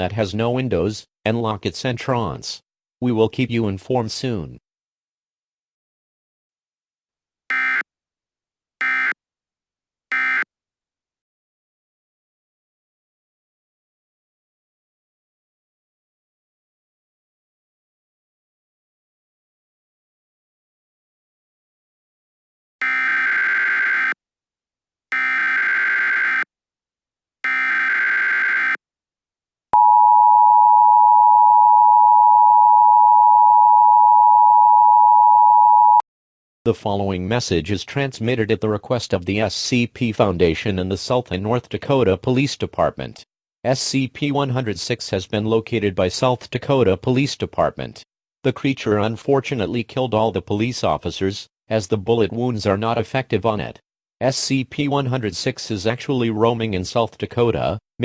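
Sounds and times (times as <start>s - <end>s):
short digital data bursts: 7.5s - 7.8s, 8.8s - 9.2s, 10.1s - 10.4s, 22.8s - 24.2s, 25.1s - 26.4s, 27.4s - 28.8s
steady two-tone attention signal: 7.5s - 7.8s, 8.8s - 9.2s, 10.1s - 10.4s, 22.8s - 24.2s, 25.1s - 26.4s, 27.5s - 28.8s.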